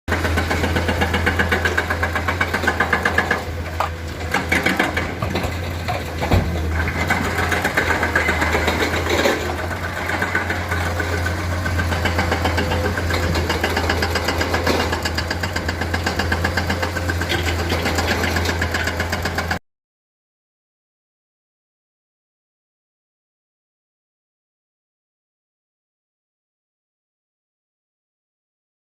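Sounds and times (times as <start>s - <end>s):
excavator diesel engine running: 0.1s - 19.6s.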